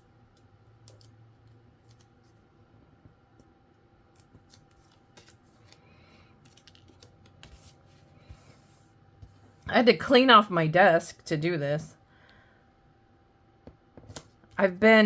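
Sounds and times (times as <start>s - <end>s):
soft paper rustle: 4.2s - 9.7s.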